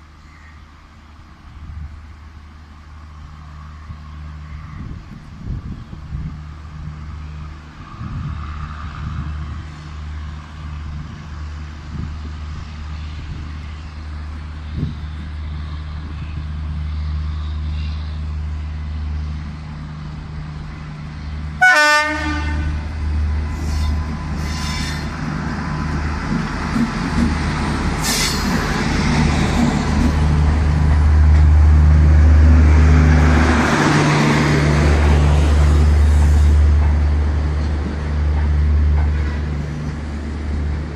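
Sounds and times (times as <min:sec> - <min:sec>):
train rumble: 0:00.0 - 0:40.9
locomotive horn blast: 0:21.6 - 0:22.9.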